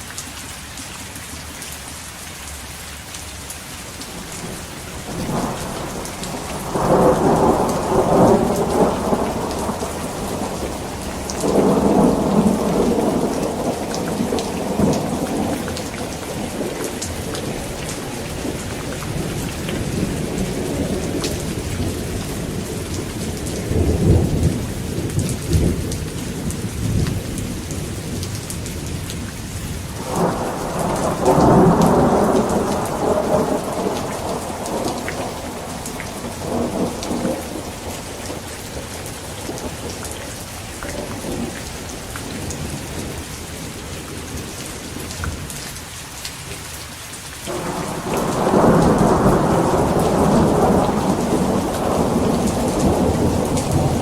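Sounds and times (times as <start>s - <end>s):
steady rain: 0.0s - 54.0s
thunder rolling: 4.2s - 22.6s, 30.0s - 40.0s, 47.5s - 54.0s.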